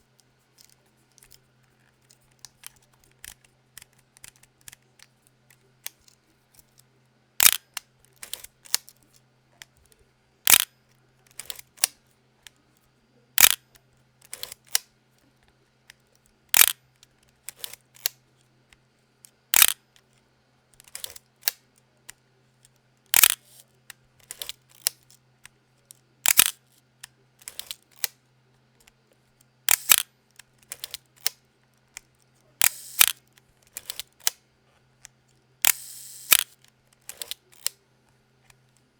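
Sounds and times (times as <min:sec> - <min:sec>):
camera shutter click: 0:07.4 - 0:07.6, 0:19.6 - 0:19.8, 0:23.2 - 0:23.6, 0:26.3 - 0:26.6, 0:29.7 - 0:30.0, 0:32.6 - 0:33.2, 0:35.6 - 0:37.7
film advance lever ratcheting: 0:07.4 - 0:07.6, 0:08.2 - 0:09.0, 0:10.5 - 0:10.7, 0:11.3 - 0:11.9, 0:13.4 - 0:13.6, 0:14.2 - 0:14.8, 0:16.5 - 0:16.8, 0:17.5 - 0:18.1, 0:19.6 - 0:19.8, 0:20.8 - 0:21.6, 0:23.1 - 0:23.6, 0:24.2 - 0:25.0, 0:26.2 - 0:26.6, 0:27.4 - 0:28.1, 0:29.7 - 0:31.4, 0:32.6 - 0:34.4, 0:35.6 - 0:37.8.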